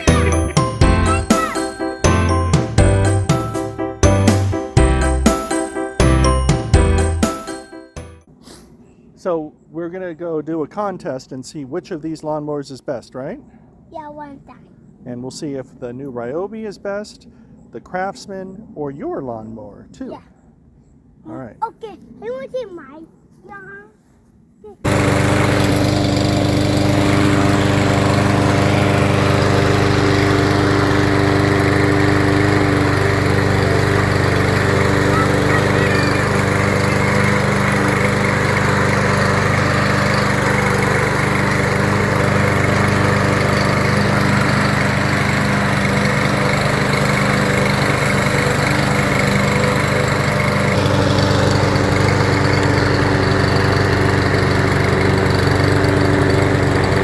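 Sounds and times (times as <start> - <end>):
lawn mower running: 0.0 - 7.7, 24.8 - 57.0.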